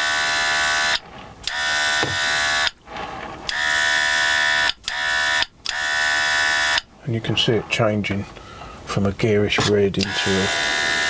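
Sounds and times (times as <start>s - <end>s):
airbrush compressor buzzing: 0.0s - 2.8s, 10.0s - 11.0s.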